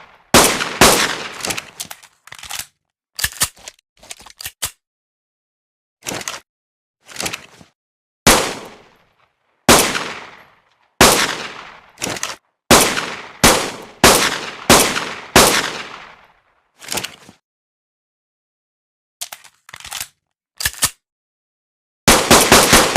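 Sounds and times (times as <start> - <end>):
synthetic pistol gunshots: 0.0 - 1.6, 8.3 - 8.8, 9.7 - 10.4, 11.0 - 11.8, 12.7 - 16.1, 22.1 - 22.9.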